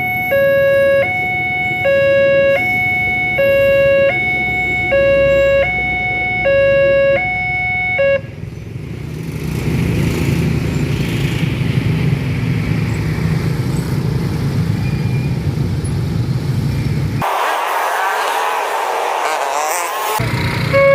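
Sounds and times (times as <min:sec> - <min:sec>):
two-tone warning siren: 0:00.0 - 0:08.4, 0:17.2 - 0:20.9
road vehicles rumbling: 0:00.0 - 0:20.9.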